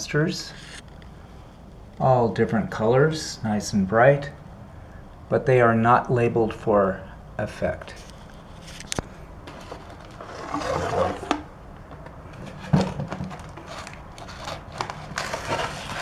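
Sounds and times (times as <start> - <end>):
scraping and rustling handling noise: 7.8 - 16.0.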